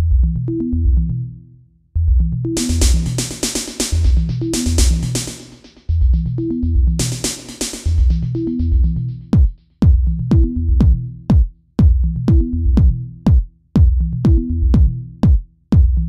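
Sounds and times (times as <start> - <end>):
deep pitch-dropping kick drums: 2.0 - 16.0
electronic music with bass line: 2.1 - 16.0.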